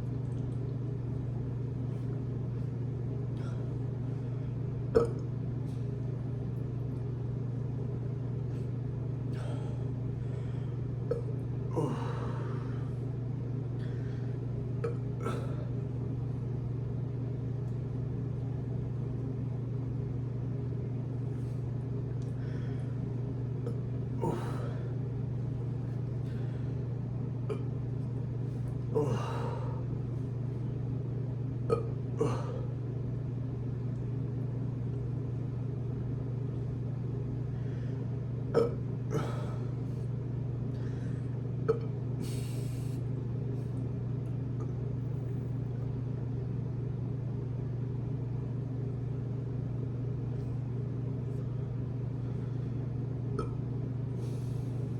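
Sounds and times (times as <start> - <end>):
steady low hum: 0.0 - 54.9
person burping: 5.0 - 5.3, 11.1 - 12.4, 14.8 - 15.7, 23.7 - 24.8, 27.5 - 27.7, 29.0 - 29.7, 31.7 - 32.7, 38.5 - 39.6, 41.6 - 41.9, 53.4 - 53.6.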